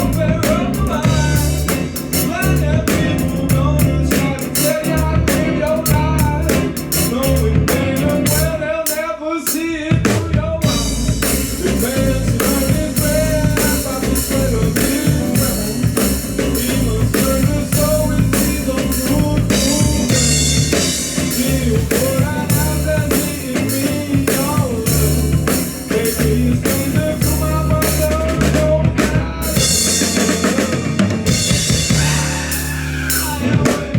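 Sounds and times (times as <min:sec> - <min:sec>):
heavy bass: 0:00.0 - 0:08.8, 0:09.9 - 0:33.9
drum kit beat: 0:00.0 - 0:33.9
wavering lead melody: 0:29.6 - 0:33.7.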